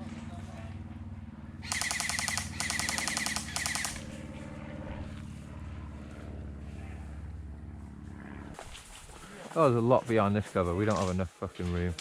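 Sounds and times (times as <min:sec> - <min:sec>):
airsoft rifle bursts: 0:01.6 - 0:04.2.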